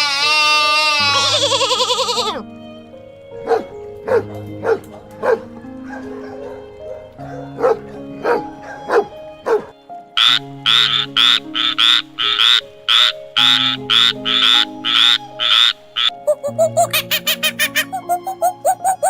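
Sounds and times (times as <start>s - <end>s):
background music: 0.0s - 19.0s
frog croaking: 10.2s - 18.6s.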